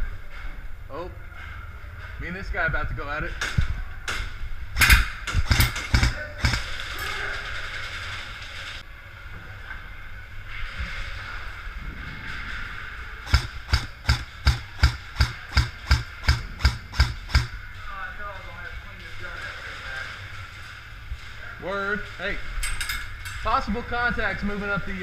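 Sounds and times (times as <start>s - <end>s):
airsoft gun shots: 4.8s - 6.9s, 13.3s - 17.6s.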